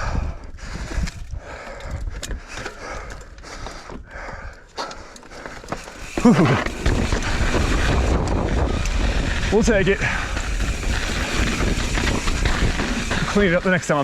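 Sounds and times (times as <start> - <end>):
man breathing hard: 0.0 - 7.1
wind on microphone: 6.6 - 13.6.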